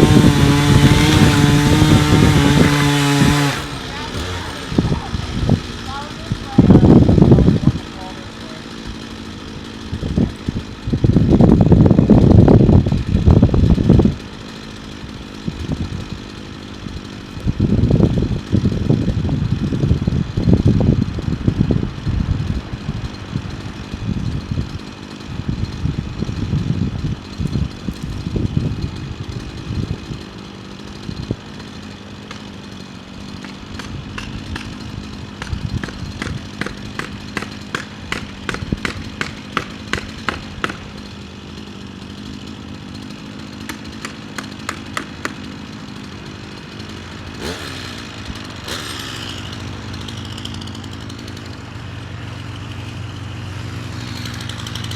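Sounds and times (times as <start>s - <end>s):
heavy low rumbling: 0.0s - 14.5s
chainsaw running: 0.0s - 54.9s
sharp ticks: 35.4s - 40.9s.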